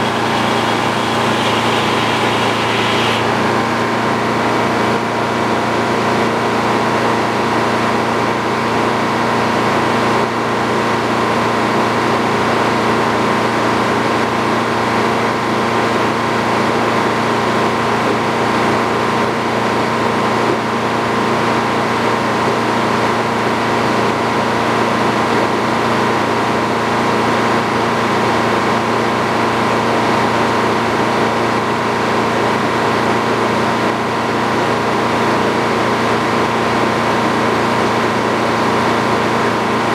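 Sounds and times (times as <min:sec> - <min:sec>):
sawmill machine drone: 0:00.0 - 0:04.8.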